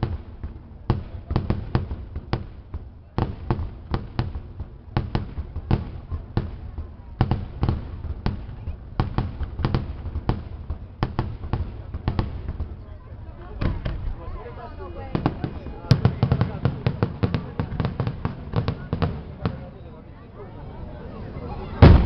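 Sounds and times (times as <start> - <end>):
fireworks bangs: 0.0 - 19.9, 21.8 - 22.0.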